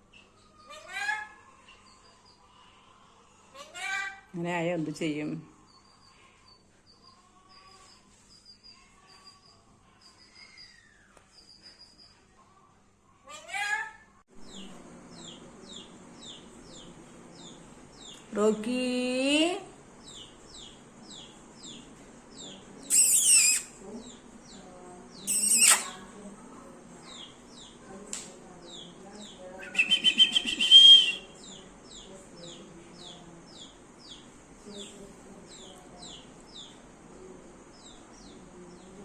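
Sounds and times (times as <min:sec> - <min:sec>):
parrot squawking: 0:00.6 - 0:01.4, 0:13.3 - 0:14.0, 0:22.9 - 0:23.8, 0:25.3 - 0:26.0
small bird chirping: 0:05.6 - 0:12.4, 0:14.4 - 0:18.3, 0:20.0 - 0:26.2, 0:28.6 - 0:36.8.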